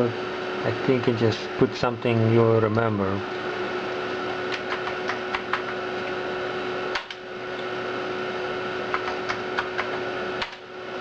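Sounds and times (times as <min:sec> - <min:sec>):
computer hard drive and fan whirring: 0:00.0 - 0:11.0.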